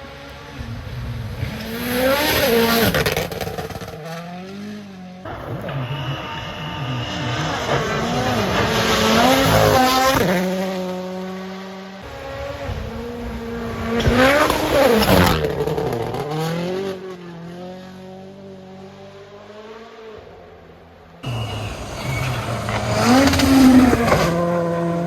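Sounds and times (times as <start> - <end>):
rally cars passing at full throttle: 0.0 - 25.0.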